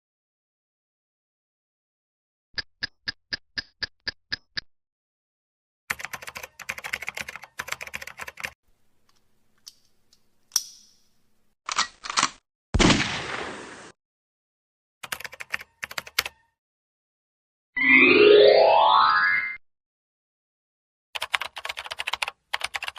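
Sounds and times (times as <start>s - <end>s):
rapid keyboard typing: 5.9s - 8.6s, 15.0s - 16.4s, 21.2s - 22.9s.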